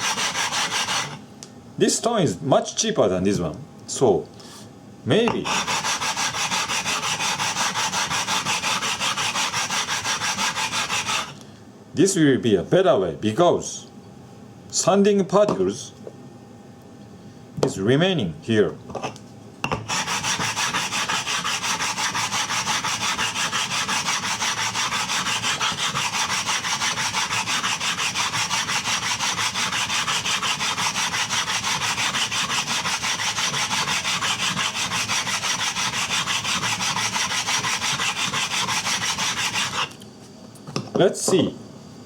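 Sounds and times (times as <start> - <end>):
gritty rasp of stone on stone: 0.0 - 1.2, 5.4 - 11.4, 19.8 - 40.0.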